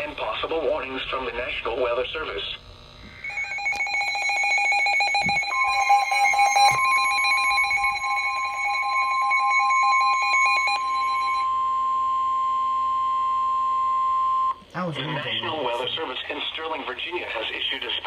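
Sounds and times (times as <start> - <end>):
steady alarm tone: 3.0 - 17.8
fast pulsing electronic alarm: 3.1 - 16.7.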